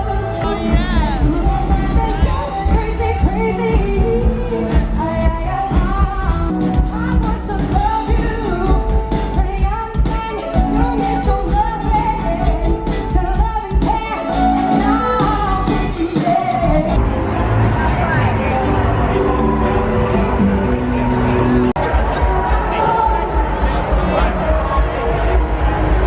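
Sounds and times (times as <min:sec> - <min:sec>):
pop song with lead vocal: 0:00.0 - 0:17.2.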